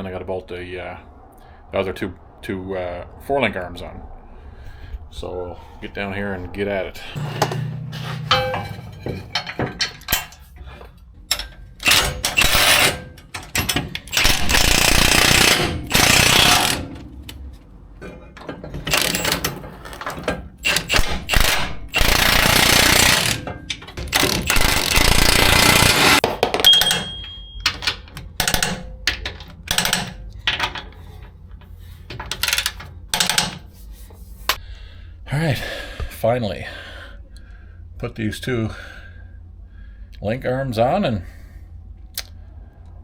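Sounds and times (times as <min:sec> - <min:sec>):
impact wrench driving bolts: 0:07.2 - 0:10.5, 0:11.3 - 0:30.7
tools clicking and clanking: 0:07.2 - 0:33.8.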